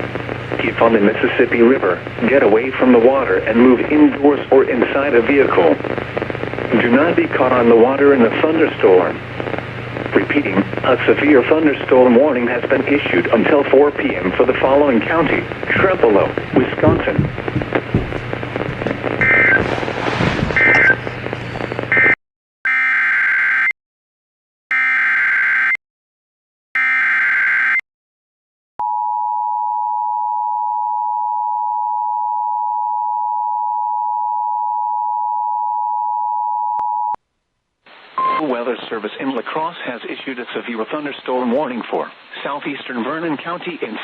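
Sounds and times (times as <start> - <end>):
radio hiss: 0.0 - 22.2, 37.9 - 44.0
digital data bursts: 13.0 - 19.7, 20.6 - 22.2
steady two-tone attention signal: 19.2 - 19.6, 20.6 - 22.2.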